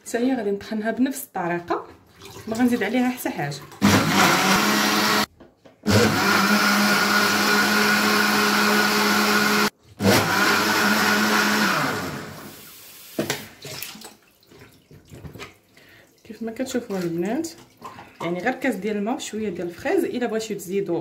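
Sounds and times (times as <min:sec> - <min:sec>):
blender running: 0:03.8 - 0:12.7.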